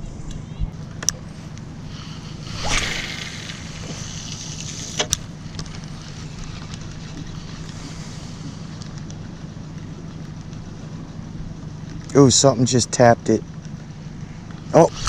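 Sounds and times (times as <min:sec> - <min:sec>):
steady low hum: 0:00.0 - 0:15.0
line hissing off reel: 0:01.8 - 0:05.2, 0:14.8 - 0:15.0
fishing rod cast whoosh: 0:01.9 - 0:05.2
sharp reel clicks: 0:14.8 - 0:15.0.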